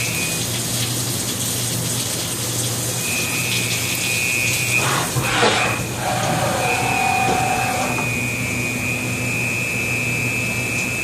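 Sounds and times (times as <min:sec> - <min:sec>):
milling machine whine: 0:03.0 - 0:11.0.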